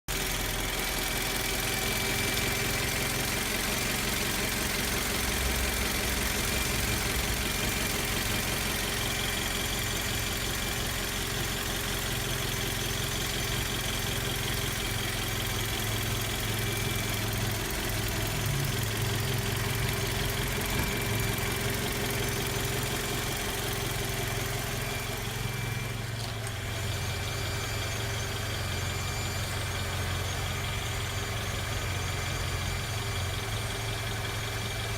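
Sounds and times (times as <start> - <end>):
car engine hum: 3.0 - 34.9
high-pitched transmission whine: 11.3 - 34.9.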